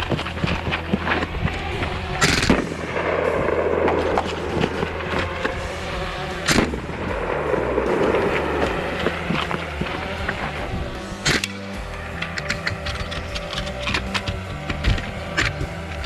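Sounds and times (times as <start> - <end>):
loud bangs: 0.0 - 16.0
air rifle shots cracking: 2.2 - 10.4, 11.0 - 11.8.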